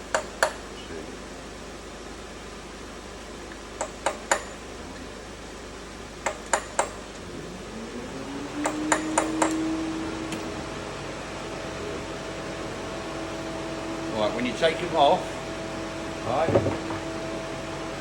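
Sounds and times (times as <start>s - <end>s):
tool tapping on metal: 0.1s - 0.6s, 3.8s - 4.6s, 6.2s - 7.0s, 8.6s - 9.6s
motor whining and humming: 7.1s - 18.0s.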